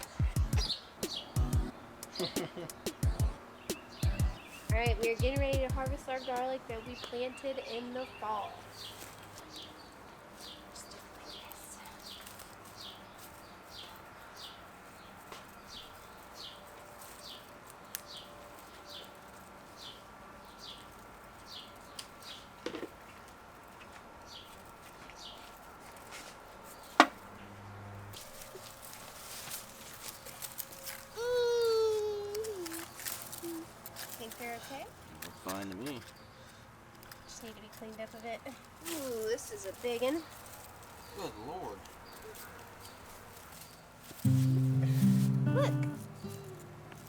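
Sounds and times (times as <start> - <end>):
bird chirping: 0.0 - 25.6.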